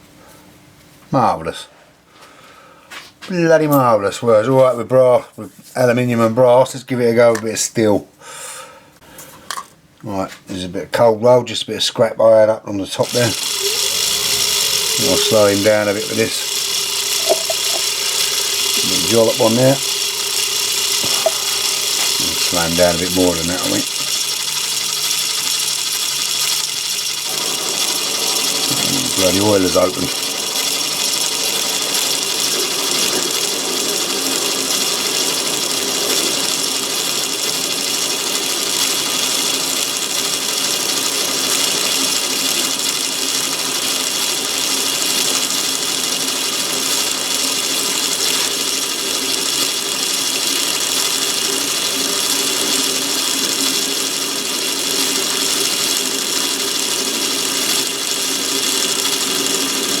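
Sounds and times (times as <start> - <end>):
lathe running: 13.0 - 60.0
tool cutting into steel bar: 13.1 - 24.2.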